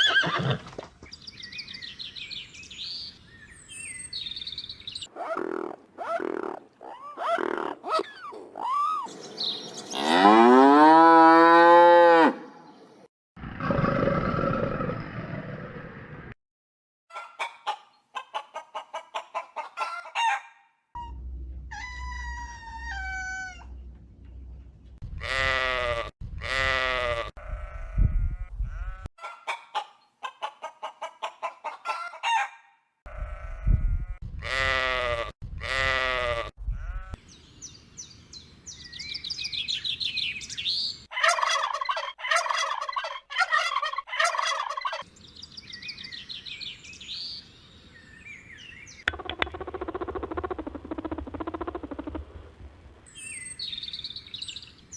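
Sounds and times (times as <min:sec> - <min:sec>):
high chirping calls: 0:01.1 - 0:05.1, 0:37.3 - 0:41.1, 0:44.8 - 0:50.1, 0:53.1 - 0:54.9.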